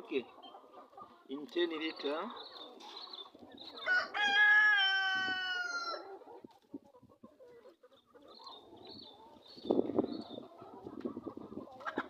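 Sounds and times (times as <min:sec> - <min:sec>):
rooster crowing: 0:03.8 - 0:06.0.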